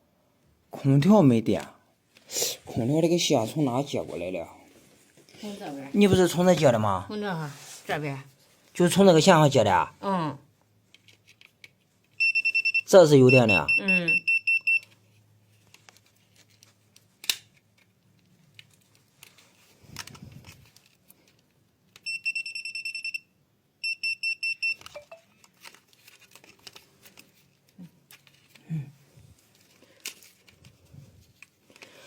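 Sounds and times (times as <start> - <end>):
rustling of handling: 14.8 - 21.7, 24.8 - 32.0.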